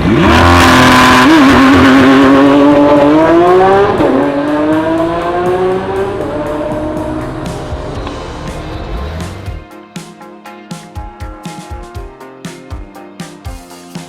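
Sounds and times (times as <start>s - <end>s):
race car engine revving: 0.0s - 9.6s.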